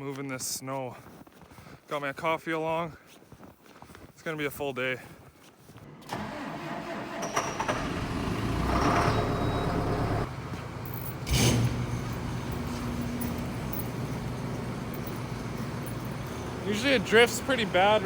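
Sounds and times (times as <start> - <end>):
vehicle engine starting and idling: 6.0 - 18.0.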